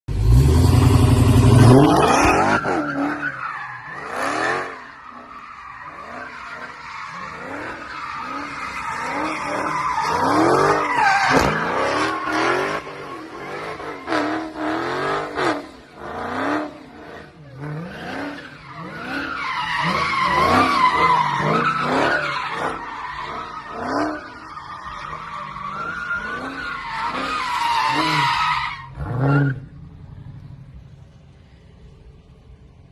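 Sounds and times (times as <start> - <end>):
car engine revving: 0.1 - 5.2
engine squealing: 0.3 - 29.8.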